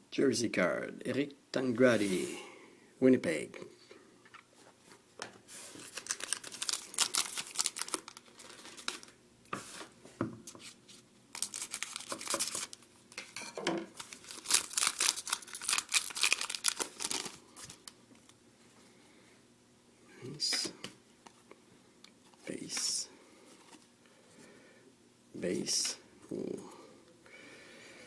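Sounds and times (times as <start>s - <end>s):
wrapper crinkling: 5.8s - 9.2s, 11.3s - 12.9s, 14.0s - 18.4s.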